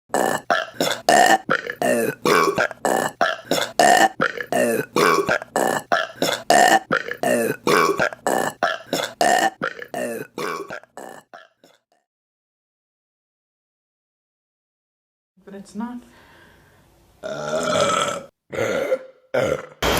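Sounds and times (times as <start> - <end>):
woman burping: 0.1 - 11.8, 17.2 - 19.9.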